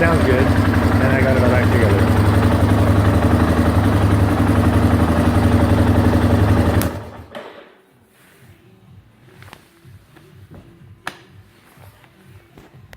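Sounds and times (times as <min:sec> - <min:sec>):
atv engine idling: 0:00.0 - 0:07.3.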